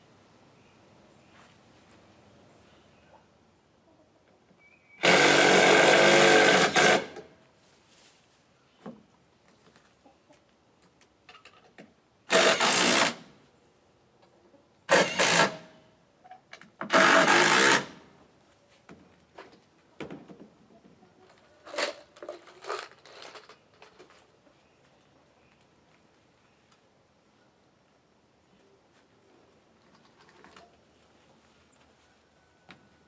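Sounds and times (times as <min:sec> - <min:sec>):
handheld power tool bursts: 0:05.0 - 0:07.3, 0:12.3 - 0:13.3, 0:14.9 - 0:15.7, 0:16.8 - 0:18.0.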